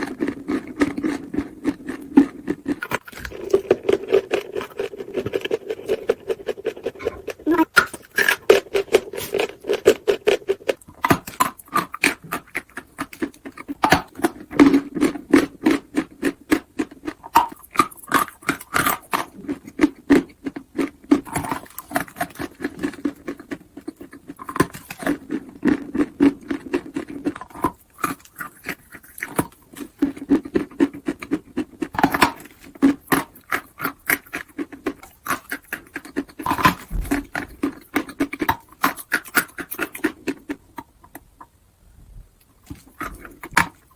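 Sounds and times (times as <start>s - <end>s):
chalk being chewed: 0.0s - 40.9s.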